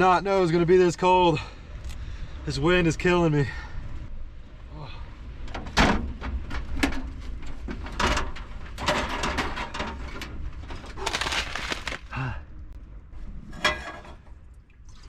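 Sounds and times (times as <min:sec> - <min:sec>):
knocks and rustles: 0:05.5 - 0:12.1.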